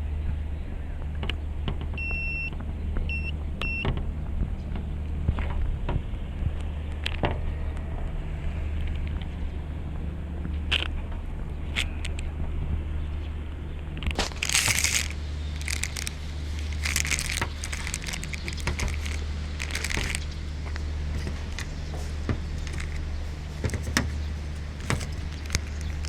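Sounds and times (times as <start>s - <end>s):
low electrical hum: 0.0s - 26.0s
crackles: 10.4s - 26.0s.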